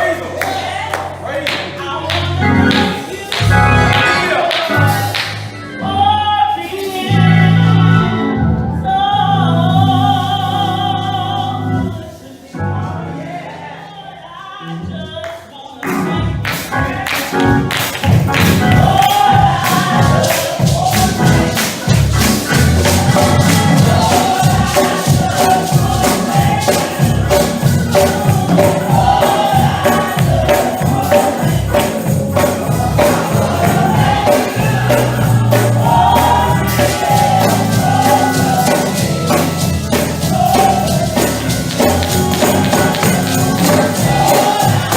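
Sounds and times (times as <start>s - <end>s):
choir and congregation singing: 0.0s - 44.9s
held instrumental notes: 2.1s - 13.6s, 15.8s - 44.9s
fast beat with tambourine: 16.5s - 44.9s.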